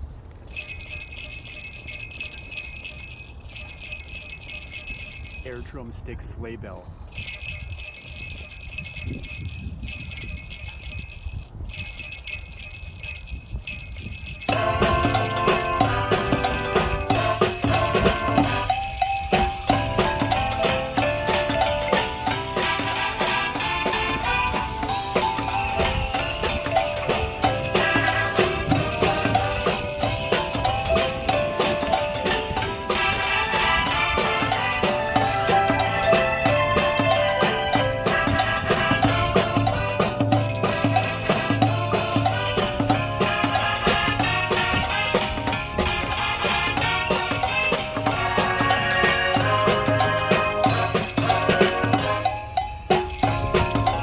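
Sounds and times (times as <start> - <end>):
sleigh bells jingling: 0.0 - 54.0
music with melody: 14.5 - 54.0.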